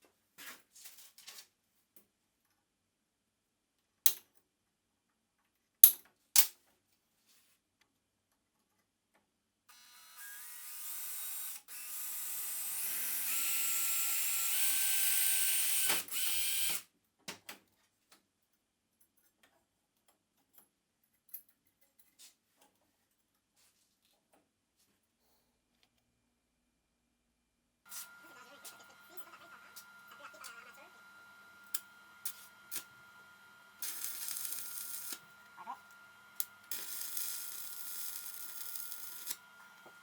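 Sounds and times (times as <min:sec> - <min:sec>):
power tool running: 0:09.7 - 0:16.8, 0:27.9 - 0:40.0.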